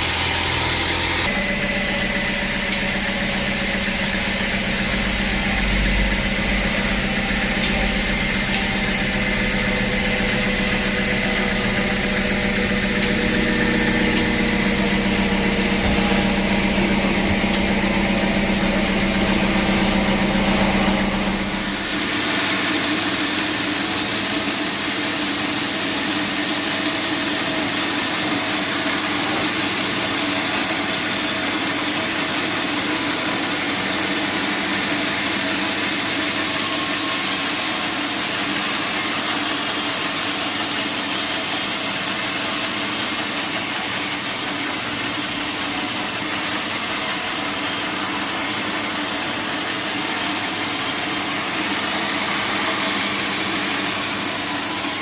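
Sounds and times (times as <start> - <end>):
band saw cutting log: 0.0 - 55.0
faint machine hum: 1.2 - 22.4.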